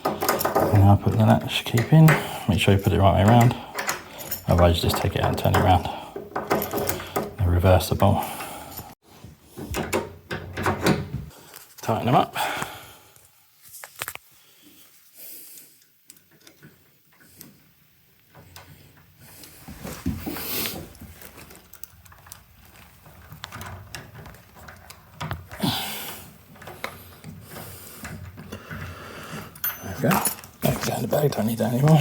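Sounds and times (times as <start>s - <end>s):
screws being tightened: 0.0s - 2.3s.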